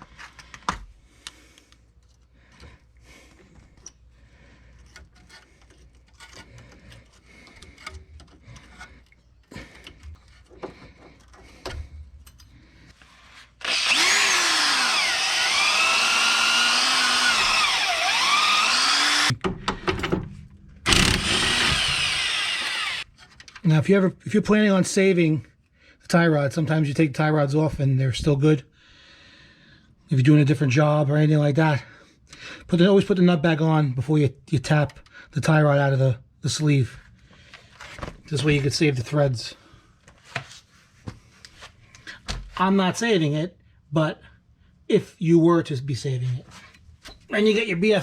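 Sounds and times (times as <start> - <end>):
power tool spinning wire wheel: 13.6 - 19.4, 20.9 - 23.1.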